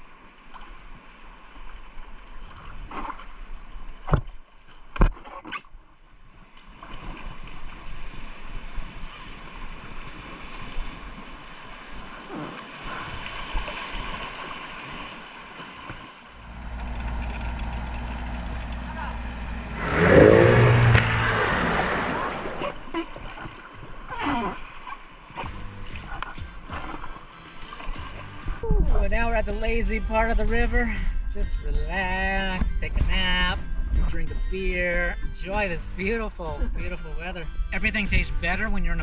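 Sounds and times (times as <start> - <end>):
river water rushing: 16.3 - 22.9
steady low rumble: 16.4 - 22.8.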